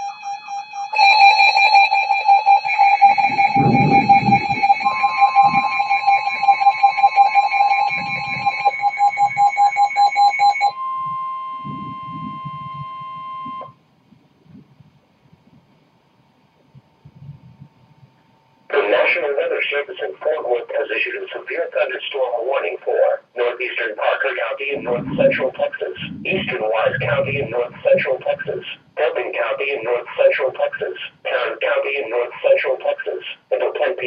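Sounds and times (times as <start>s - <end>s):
electronic alarm rapid pulsing beeps: 0.0s - 13.8s, 24.6s - 28.5s
steady warning alarm tone: 0.0s - 13.8s, 17.8s - 34.0s.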